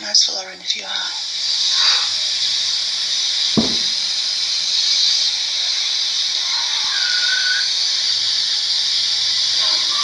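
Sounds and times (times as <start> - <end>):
dull thump: 3.6 - 4.2.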